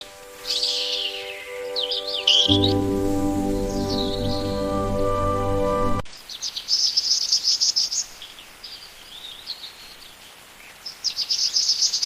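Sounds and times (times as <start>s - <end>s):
background music: 0.0s - 6.1s
small birds chirping: 0.4s - 12.0s.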